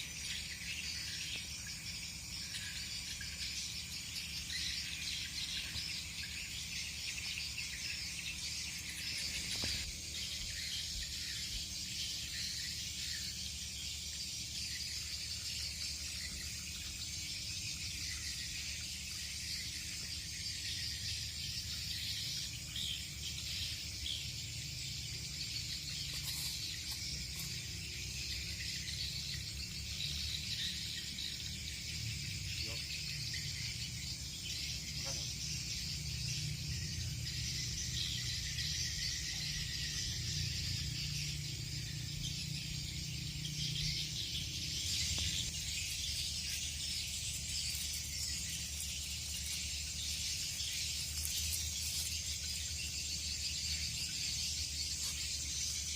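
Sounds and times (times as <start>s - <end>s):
insects buzzing: 0.0s - 55.9s.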